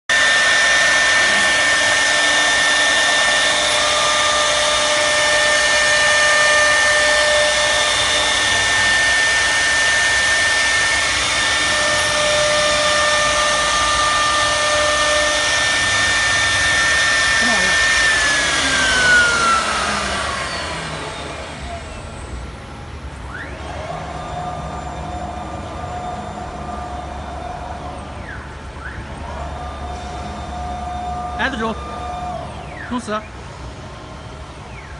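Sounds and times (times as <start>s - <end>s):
loud hissing noise: 0.1s - 22.6s
low hum: 0.1s - 34.9s
router spindle whining: 0.1s - 34.9s.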